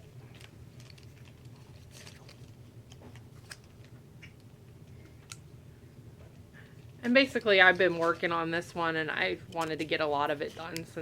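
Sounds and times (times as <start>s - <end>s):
low steady hum: 0.0s - 11.0s
plastic pieces clicking on wire: 9.5s - 10.9s.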